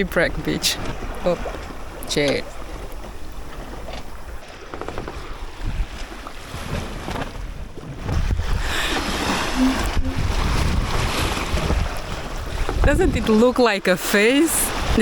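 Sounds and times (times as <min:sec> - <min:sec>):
sea water washing along hull: 0:00.0 - 0:15.0
wind buffeting microphone: 0:05.0 - 0:13.6.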